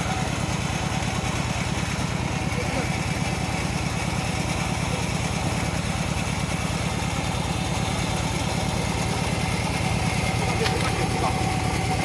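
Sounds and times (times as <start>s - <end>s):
small engine running steadily: 0.0s - 12.0s.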